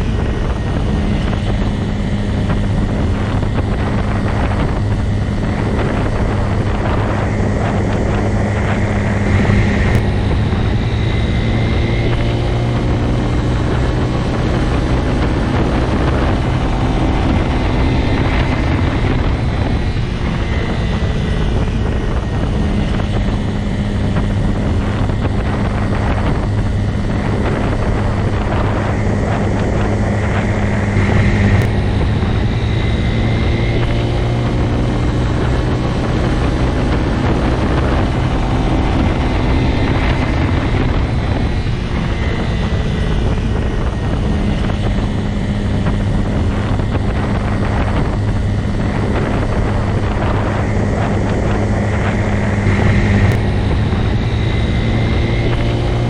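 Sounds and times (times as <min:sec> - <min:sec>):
motorcycle engine running: 0:00.0 - 0:56.0.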